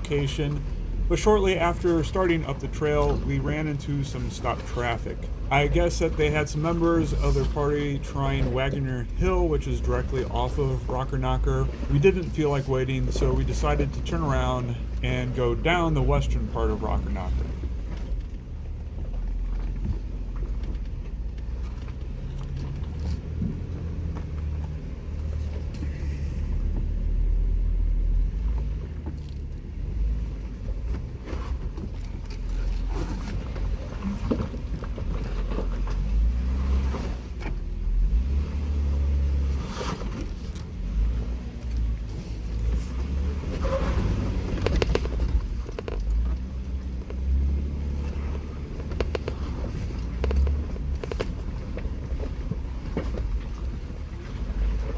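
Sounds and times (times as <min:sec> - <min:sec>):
engine and drivetrain rumble: 0:00.0 - 0:54.9
knocks and clicks: 0:44.4 - 0:47.3, 0:48.8 - 0:51.9.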